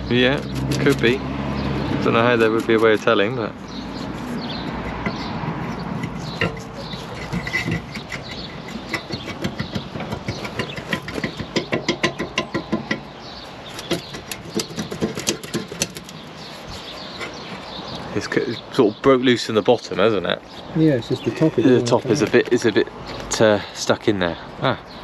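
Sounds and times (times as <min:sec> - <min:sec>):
sharp metallic clicks and knocks: 0:00.1 - 0:03.8, 0:04.5 - 0:17.8.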